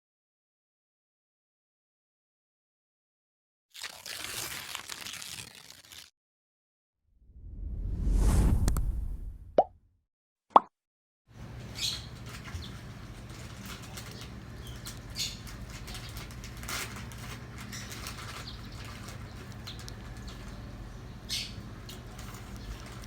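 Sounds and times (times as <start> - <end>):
birds fluttering and rustling: 11.4 - 23.0.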